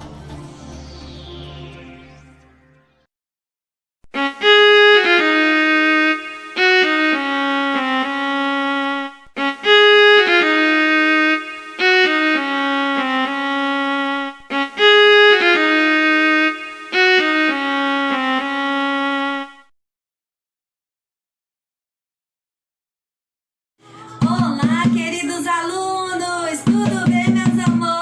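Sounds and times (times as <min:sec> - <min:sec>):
bright instrumental melody: 0:04.2 - 0:19.6, 0:23.8 - 0:28.0.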